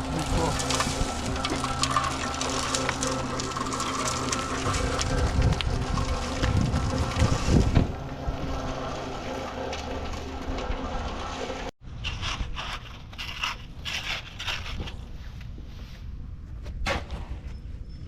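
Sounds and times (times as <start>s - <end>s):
steady machine hum: 0.0s - 11.8s
crunching and scraping of gravel: 0.0s - 17.4s.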